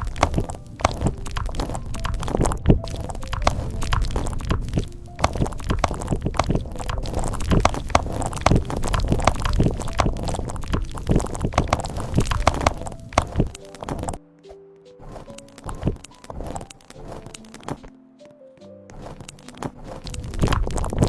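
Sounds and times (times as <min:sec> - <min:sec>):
keyboard typing clicks: 0:00.0 - 0:14.5.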